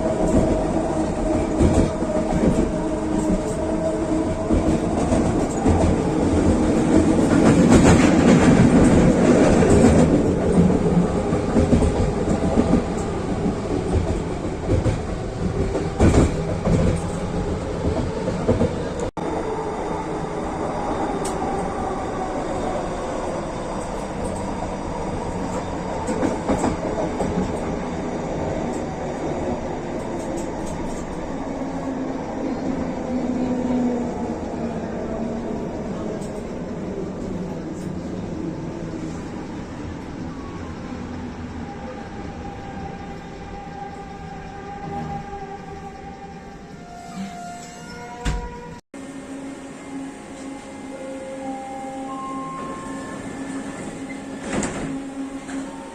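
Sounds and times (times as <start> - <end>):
metro train wheels clacking: 0.0 - 19.4, 21.0 - 55.9.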